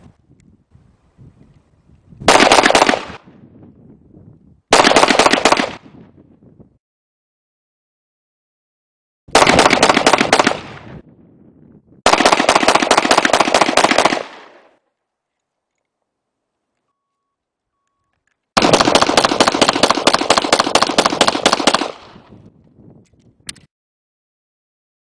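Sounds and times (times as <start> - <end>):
automatic gunfire: 2.3 - 3.2, 4.7 - 5.8, 9.3 - 10.9, 12.1 - 14.7, 18.6 - 22.2.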